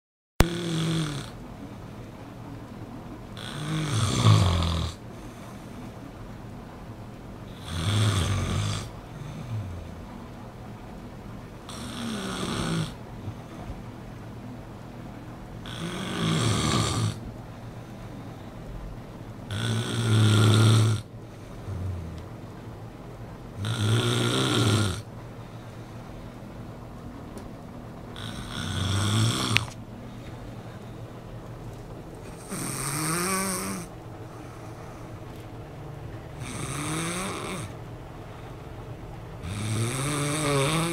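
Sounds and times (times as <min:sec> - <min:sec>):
person snoring: 0:00.4 - 0:01.4, 0:03.4 - 0:05.0, 0:07.5 - 0:09.9, 0:11.7 - 0:13.0, 0:15.6 - 0:17.2, 0:19.5 - 0:22.3, 0:23.6 - 0:25.1, 0:28.2 - 0:29.8, 0:32.3 - 0:35.0, 0:36.4 - 0:37.8, 0:39.4 - 0:40.9.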